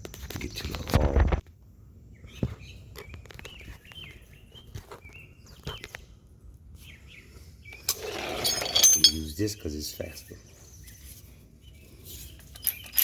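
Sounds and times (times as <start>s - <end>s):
birds chirping: 2.1s - 6.2s.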